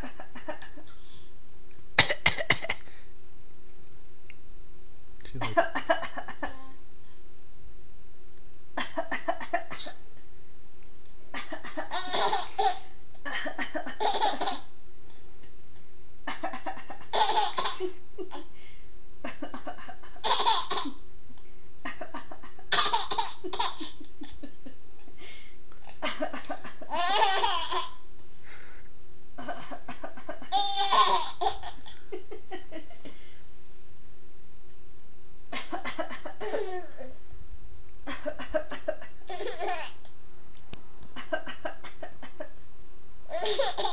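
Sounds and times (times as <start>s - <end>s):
faint steady hum: 0.0s - 43.9s
woman coughing: 2.0s - 2.8s
small child laughing: 11.3s - 14.7s, 16.3s - 18.5s, 19.3s - 21.0s, 21.9s - 24.7s, 25.9s - 28.0s, 30.3s - 32.8s, 35.6s - 37.1s, 38.3s - 40.0s, 43.3s - 43.9s.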